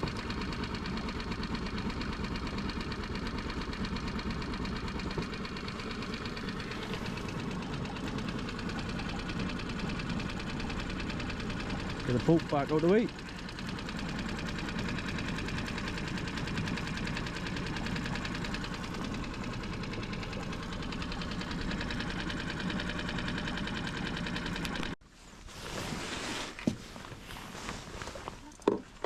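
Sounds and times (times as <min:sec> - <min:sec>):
outboard motor running: 0:00.0 - 0:25.0.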